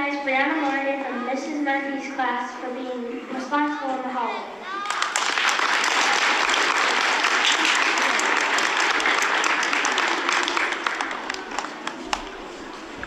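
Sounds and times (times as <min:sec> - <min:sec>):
audience clapping: 0:04.8 - 0:13.0.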